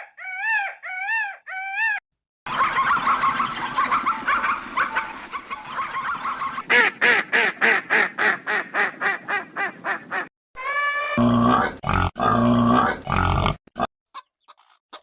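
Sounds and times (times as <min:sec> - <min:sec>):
waterfowl honking: 0:02.5 - 0:10.3.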